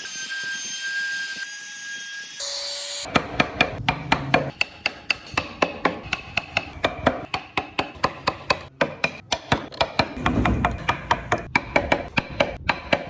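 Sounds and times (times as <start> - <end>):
mallet striking chisel into wood: 3.1 - 13.0.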